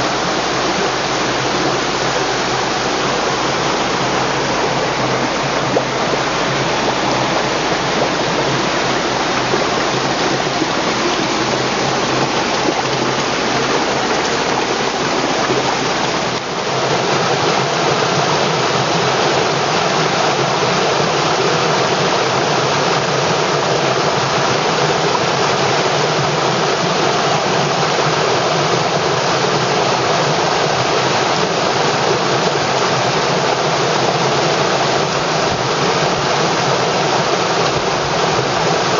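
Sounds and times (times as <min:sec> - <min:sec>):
river water rushing over rocks: 0:00.0 - 0:38.9.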